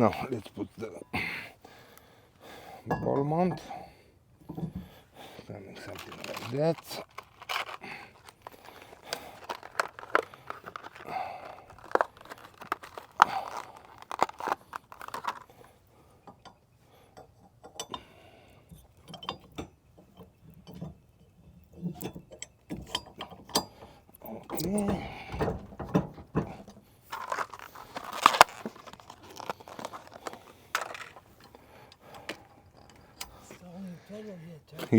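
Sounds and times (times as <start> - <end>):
metal clanks and clicks: 18.8 - 33.5.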